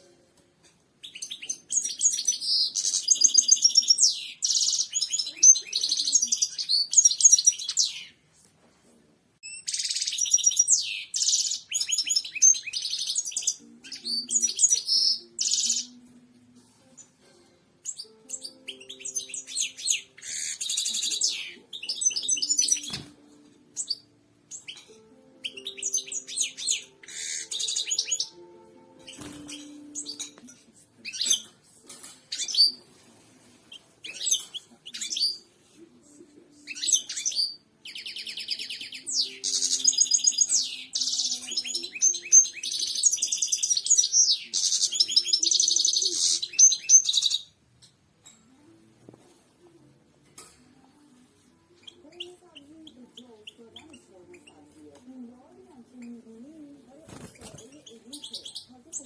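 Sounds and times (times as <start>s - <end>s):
goldfinch singing: 1.0s - 8.1s, 9.4s - 16.1s, 17.8s - 30.4s, 36.7s - 47.5s, 55.8s - 59.0s.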